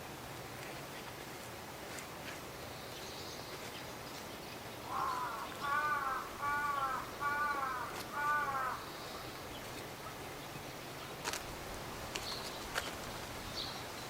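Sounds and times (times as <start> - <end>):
crow cawing: 4.9 - 8.9.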